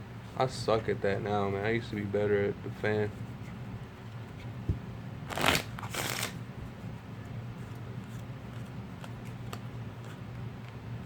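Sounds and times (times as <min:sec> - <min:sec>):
low steady hum: 0:00.0 - 0:11.0
playing cards riffling: 0:05.3 - 0:06.4.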